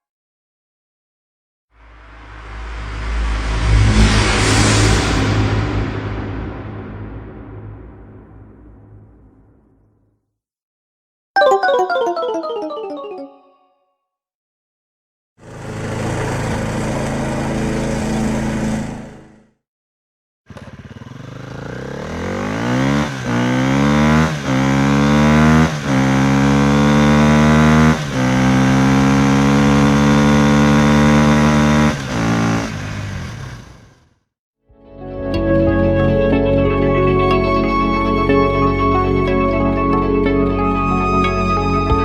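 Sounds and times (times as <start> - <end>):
vehicle engine accelerating through gears: 15.4 - 19.4, 20.5 - 34.1.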